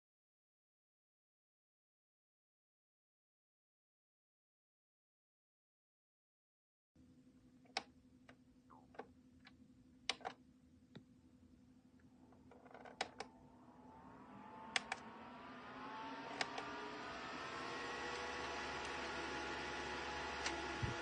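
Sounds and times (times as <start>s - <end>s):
electric fan motor whine: 13.1s - 21.0s
fan air rushing: 13.4s - 21.0s
sharp clicks: 14.7s - 15.0s.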